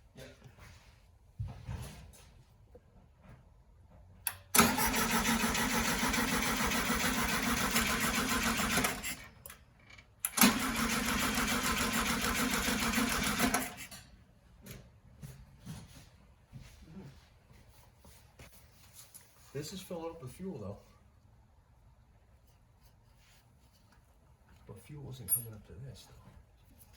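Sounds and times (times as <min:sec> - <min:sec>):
engine cranking by starter: 0:04.3 - 0:09.6, 0:10.2 - 0:13.9.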